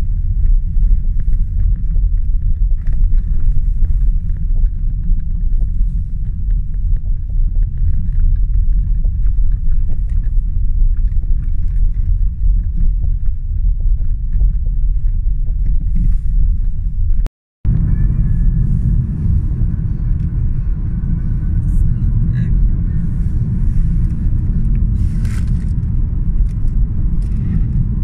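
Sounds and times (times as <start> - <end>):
loud low rumble: 0.0 - 28.0.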